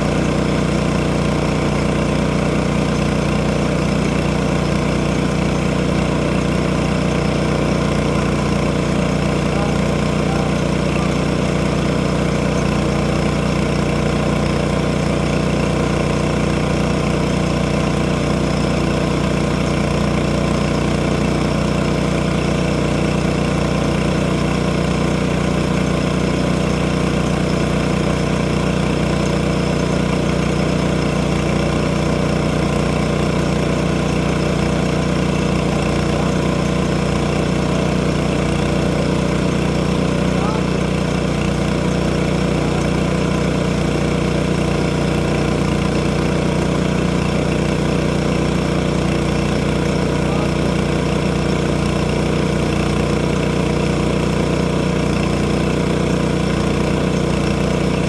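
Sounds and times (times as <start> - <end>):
engine running steadily: 0.0 - 58.0.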